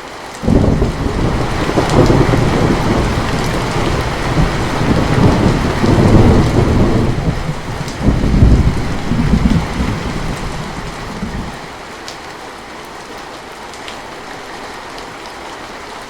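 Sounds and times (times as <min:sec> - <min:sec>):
steady rain: 0:00.0 - 0:16.0
thunder rumbling: 0:00.4 - 0:11.7.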